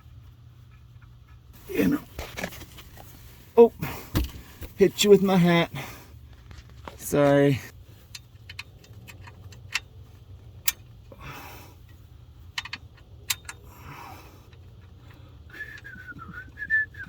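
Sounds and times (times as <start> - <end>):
metallic clicks of tools: 12.5 - 13.7
person whistling a tune: 15.5 - 17.0.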